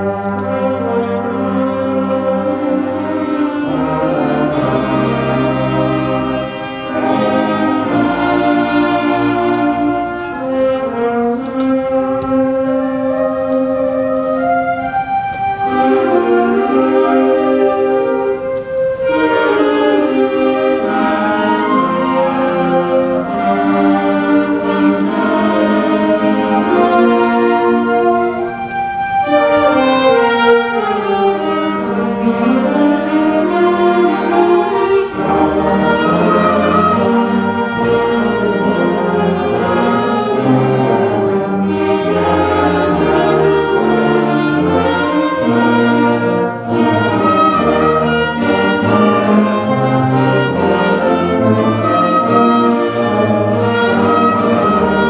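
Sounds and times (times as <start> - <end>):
orchestral strings playing: 0.0 - 55.0.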